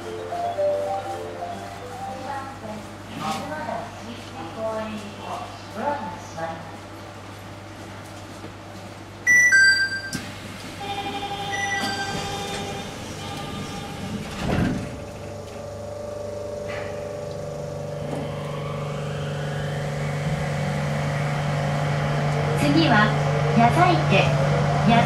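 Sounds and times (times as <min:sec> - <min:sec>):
station chime: 0:09.3 - 0:10.2, 0:11.5 - 0:12.5
train doors closing: 0:09.3 - 0:15.9, 0:16.6 - 0:19.0
electric train drive whine: 0:10.2 - 0:25.0.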